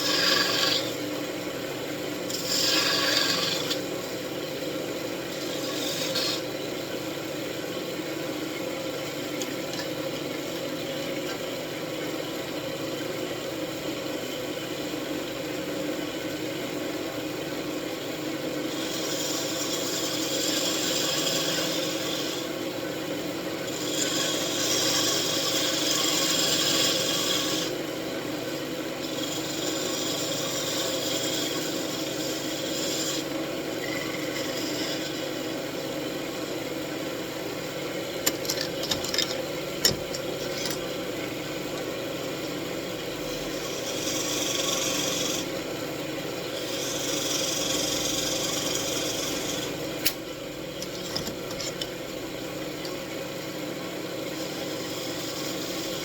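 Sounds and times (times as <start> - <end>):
tool rasping on spinning wood: 0.0 - 1.0, 2.3 - 4.0, 5.3 - 6.6, 18.6 - 22.6, 23.6 - 27.8, 29.0 - 36.7, 43.1 - 45.7, 46.4 - 50.0, 54.2 - 56.0
wood lathe humming: 0.0 - 1.0, 2.2 - 4.4, 5.1 - 7.0, 18.5 - 50.1, 50.8 - 56.0.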